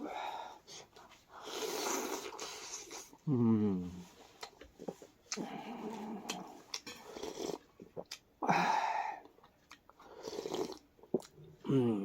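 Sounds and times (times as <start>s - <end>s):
person slurping noodle soup: 1.4s - 3.2s, 4.9s - 8.1s, 10.1s - 11.3s.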